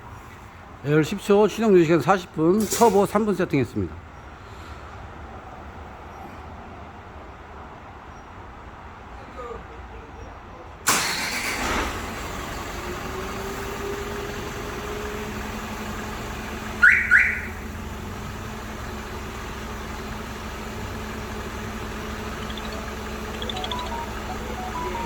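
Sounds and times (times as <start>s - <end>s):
diesel truck engine idling: 14.0s - 25.0s
alarm chirps: 16.8s - 17.6s, 22.0s - 25.0s.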